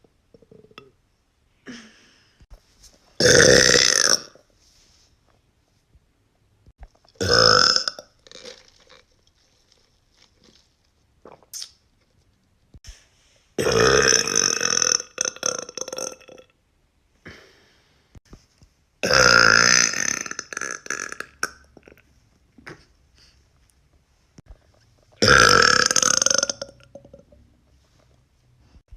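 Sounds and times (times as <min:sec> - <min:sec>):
woman burping: 0:03.2 - 0:04.4, 0:07.2 - 0:08.0, 0:25.2 - 0:27.2.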